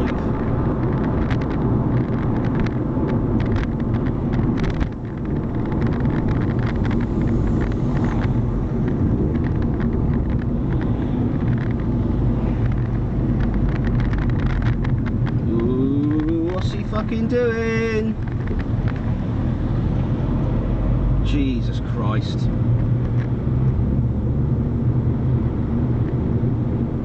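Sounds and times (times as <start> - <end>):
small clicks and rattles: 0.0 - 20.0
car engine and road rumble: 0.0 - 27.0.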